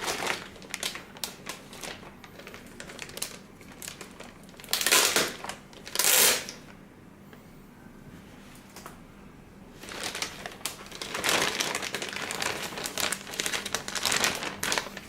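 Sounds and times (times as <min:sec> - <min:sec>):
plastic wrapping crinkling: 0:00.0 - 0:06.8, 0:09.8 - 0:15.0.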